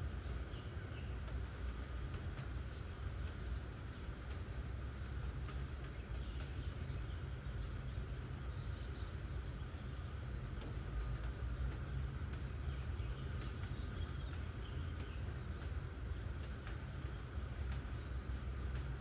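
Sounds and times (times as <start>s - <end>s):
rain: 0.0s - 19.0s.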